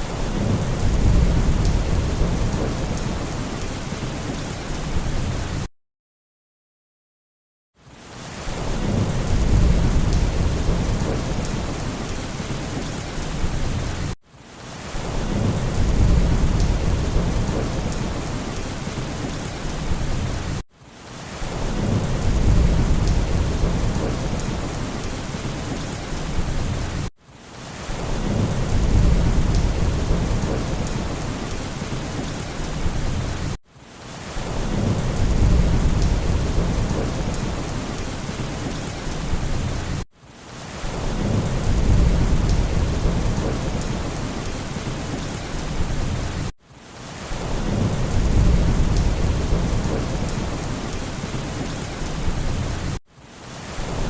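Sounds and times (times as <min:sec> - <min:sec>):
rolling thunder: 0:00.0 - 0:04.4, 0:08.6 - 0:14.0, 0:15.1 - 0:20.4, 0:21.5 - 0:27.0, 0:28.0 - 0:33.6, 0:34.5 - 0:40.0, 0:41.0 - 0:44.9, 0:47.4 - 0:53.0
rain hiss: 0:00.0 - 0:05.7, 0:07.8 - 0:54.0.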